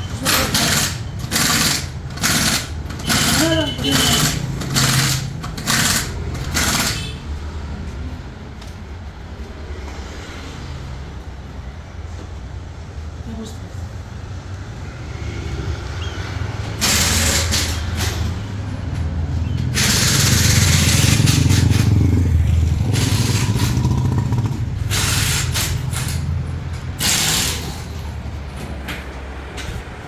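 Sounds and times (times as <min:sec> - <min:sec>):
vehicle engine low hum: 0:02.8 - 0:30.0.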